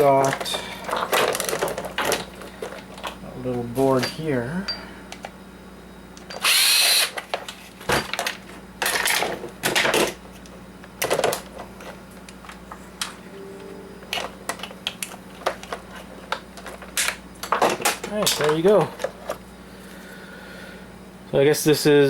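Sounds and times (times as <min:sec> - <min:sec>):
faint steady hum: 0:00.0 - 0:22.0
plastic parts clicking and scraping: 0:00.2 - 0:03.2, 0:14.2 - 0:19.4.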